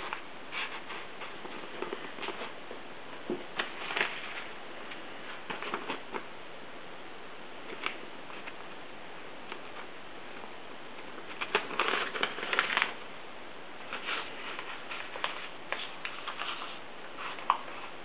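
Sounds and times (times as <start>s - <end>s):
rustling and crinkling: 0.0s - 6.4s, 11.0s - 13.0s, 13.8s - 18.0s.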